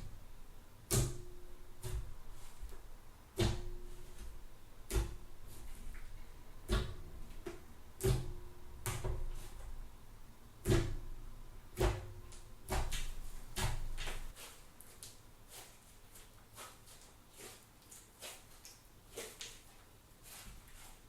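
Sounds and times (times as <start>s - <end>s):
soft slime crackling: 12.3s - 21.0s.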